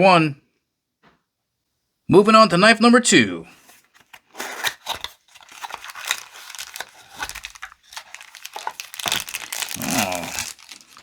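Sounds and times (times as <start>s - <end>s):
packaging crinkling and tearing: 3.5s - 11.0s.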